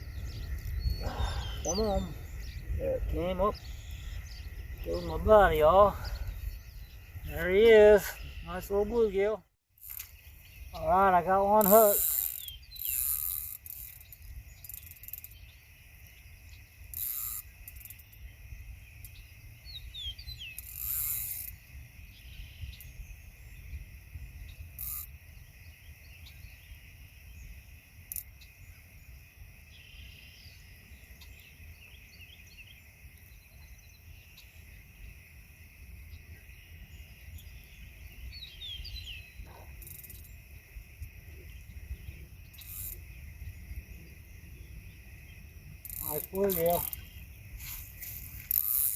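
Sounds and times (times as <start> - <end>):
wind rumble on microphone: 0.0 - 9.2, 21.5 - 27.8, 28.6 - 48.5
bird chirps: 0.0 - 9.3, 9.9 - 23.8, 28.2 - 35.1, 36.1 - 48.9.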